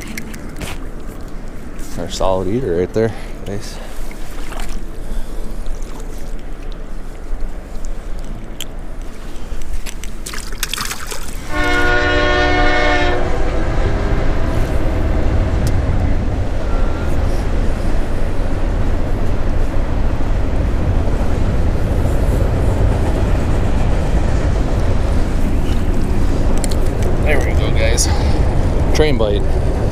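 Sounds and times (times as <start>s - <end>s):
train horn: 11.5s - 15.6s
train rumbling by: 11.5s - 29.9s.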